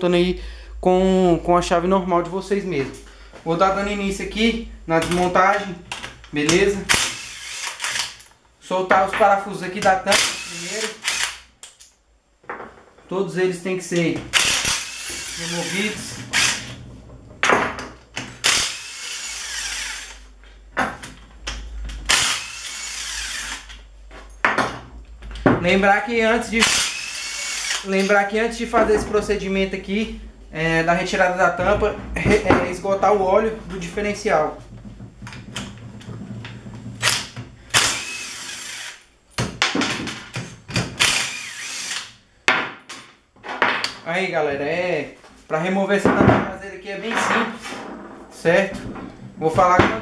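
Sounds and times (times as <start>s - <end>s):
impact wrench loosening bolts: 5.9s - 8.3s, 14.3s - 16.8s, 18.2s - 20.2s
impact wrench running: 6.9s - 8.3s, 10.1s - 11.5s, 14.3s - 16.8s, 18.4s - 20.3s, 22.1s - 23.7s, 26.6s - 28.1s, 37.0s - 39.0s, 40.9s - 42.1s.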